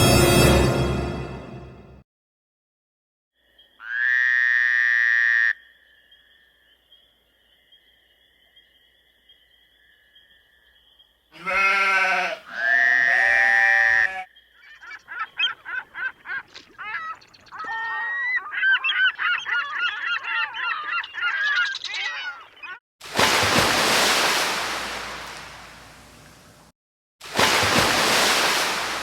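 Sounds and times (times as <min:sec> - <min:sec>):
animal honks: 0:11.4 - 0:14.2
rapid cackling animal calls: 0:11.4 - 0:22.8.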